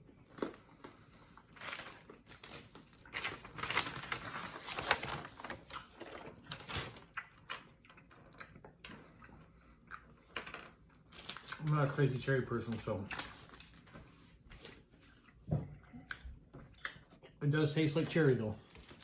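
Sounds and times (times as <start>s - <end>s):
candy packaging rustling: 0.1s - 9.0s, 10.3s - 15.2s, 17.7s - 19.0s.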